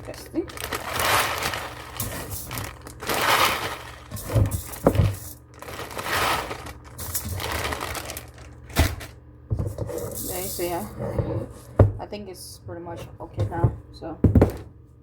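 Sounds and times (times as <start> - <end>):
rustling and crinkling handling: 0.0 - 10.8.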